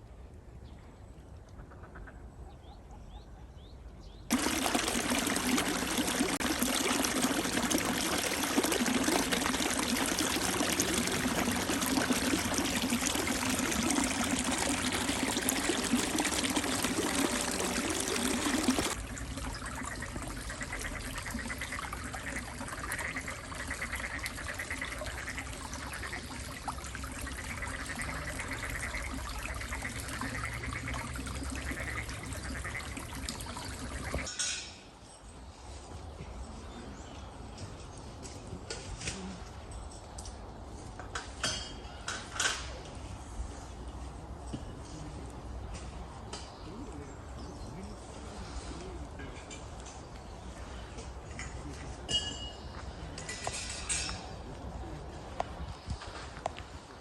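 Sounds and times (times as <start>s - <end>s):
water flowing: 4.3s - 34.3s.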